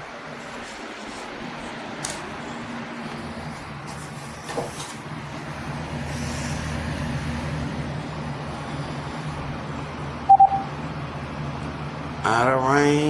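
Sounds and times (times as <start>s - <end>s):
low background hum: 0.0s - 13.0s
cordless phone beeps: 10.3s - 10.7s.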